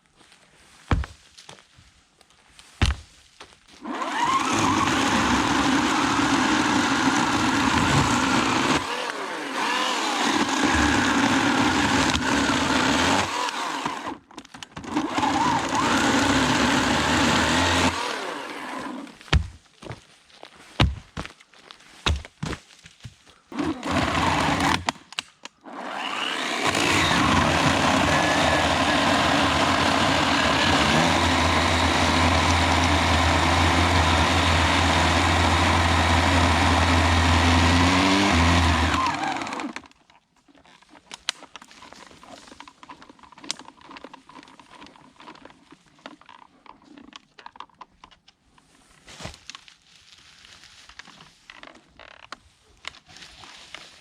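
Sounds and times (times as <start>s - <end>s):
electric chainsaw running: 3.8s - 14.2s, 14.8s - 19.2s, 23.5s - 25.0s, 25.6s - 39.9s
cracks and rustles: 13.9s - 15.0s, 39.8s - 54.0s.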